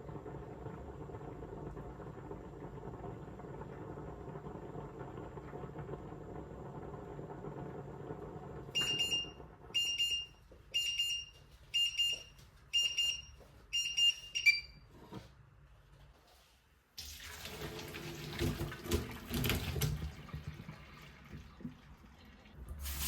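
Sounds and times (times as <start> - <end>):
appliance hum: 0.0 - 23.0
short high appliance beeps: 8.8 - 14.9.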